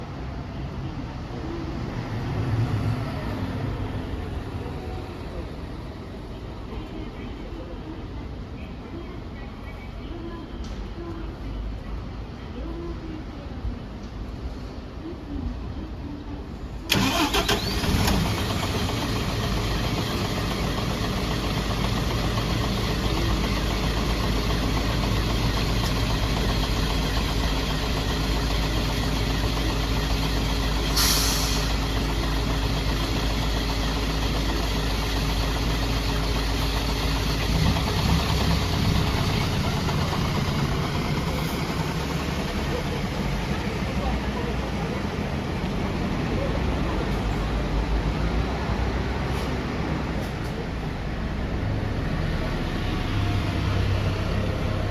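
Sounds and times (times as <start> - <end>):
bus diesel engine starting and idling: 0.0 - 8.5, 16.4 - 54.9
air hiss: 30.9 - 31.8.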